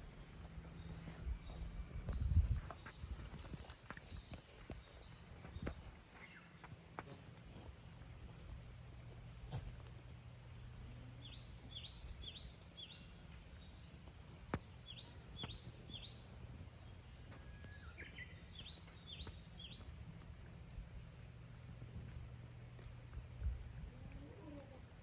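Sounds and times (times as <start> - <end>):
steady low background hum: 0.0 - 25.0
small bird chirping: 11.0 - 20.0.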